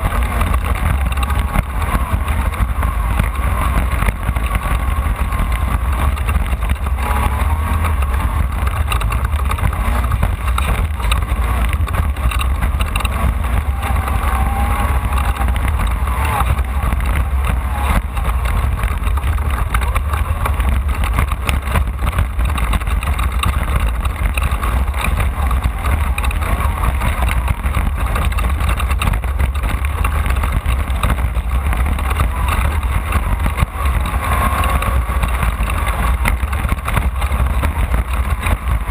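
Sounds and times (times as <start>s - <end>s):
car rattling over rough ground: 0.0s - 38.9s
race car engine rumble: 0.0s - 38.9s.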